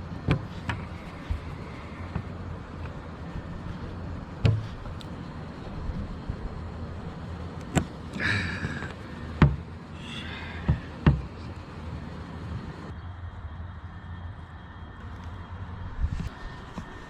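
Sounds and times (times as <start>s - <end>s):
steady low hum: 0.0s - 17.0s
sharp knocks and clunks: 0.2s - 3.5s, 4.4s - 5.1s, 7.6s - 9.7s, 10.6s - 11.5s.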